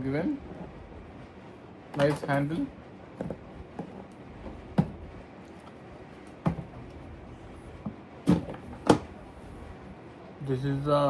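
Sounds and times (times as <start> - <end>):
plastic toolbox clicks and knocks: 2.0 - 2.4, 3.2 - 5.0, 5.6 - 7.0, 7.8 - 9.1.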